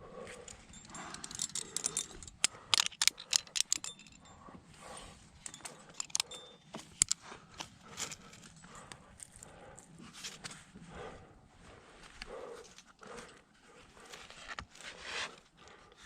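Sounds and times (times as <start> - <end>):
metal climbing gear clinking: 0.0 - 10.5.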